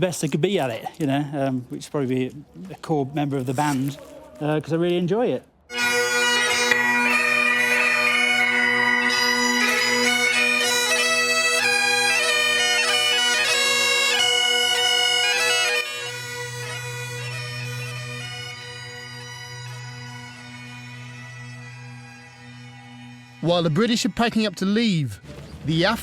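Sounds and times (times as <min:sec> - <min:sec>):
bagpipe drones: 0:05.7 - 0:25.2
bagpipes playing a tune: 0:05.7 - 0:25.2.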